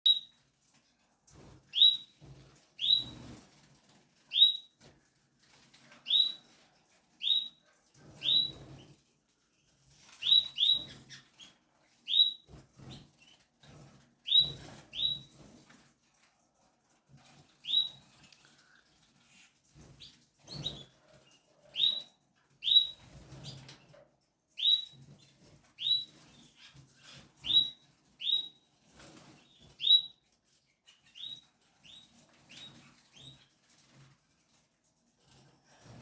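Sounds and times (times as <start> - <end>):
bird chirping: 0.0 - 0.4, 1.7 - 3.4, 4.3 - 4.8, 6.0 - 6.5, 7.2 - 9.0, 10.1 - 13.4, 14.2 - 15.4, 17.6 - 18.4, 20.0 - 23.8, 24.6 - 28.6, 30.8 - 33.5.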